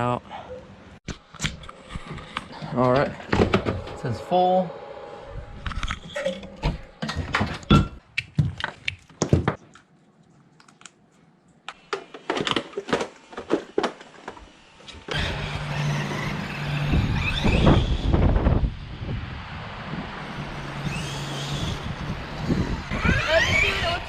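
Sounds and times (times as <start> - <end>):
wind noise: 1.5 - 8.0, 16.2 - 24.0
electric motor humming and whining: 14.0 - 19.1, 20.2 - 24.0.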